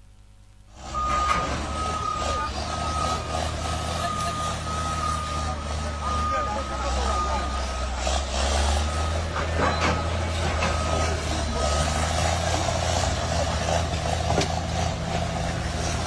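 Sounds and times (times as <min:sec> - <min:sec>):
excavator diesel engine running: 0:00.7 - 0:16.0
high warning beep: 0:00.8 - 0:16.0.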